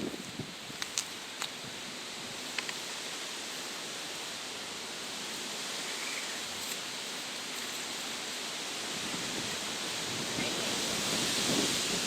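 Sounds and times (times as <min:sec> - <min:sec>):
steady rushing hiss: 0:00.0 - 0:12.0
faint ticks: 0:00.8 - 0:01.6, 0:02.5 - 0:03.0.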